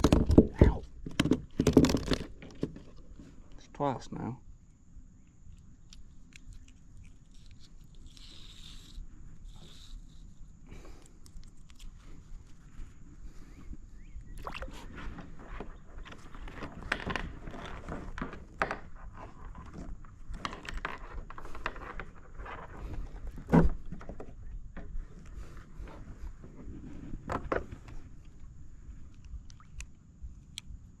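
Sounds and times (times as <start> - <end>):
knocks and clicks in kayak: 0.0 - 3.1, 14.4 - 25.4.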